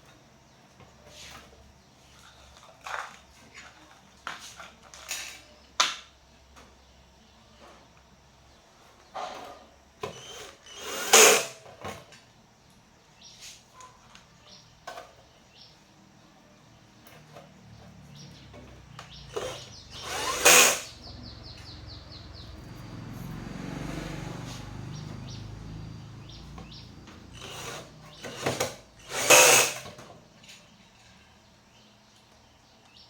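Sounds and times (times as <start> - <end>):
small power-tool motor running: 10.0 - 11.6, 19.2 - 21.0, 25.8 - 30.0.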